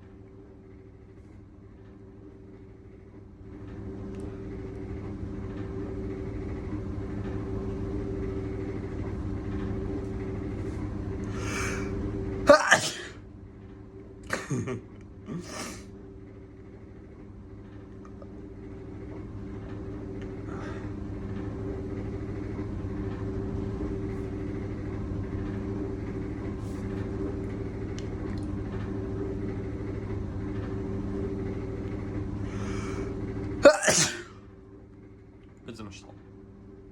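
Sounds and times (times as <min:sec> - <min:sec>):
steady droning hum: 0:00.0 - 0:36.9
breathy intake: 0:11.3 - 0:11.9, 0:15.3 - 0:15.8
person sneezing: 0:12.5 - 0:13.2, 0:14.3 - 0:15.8, 0:33.6 - 0:34.3.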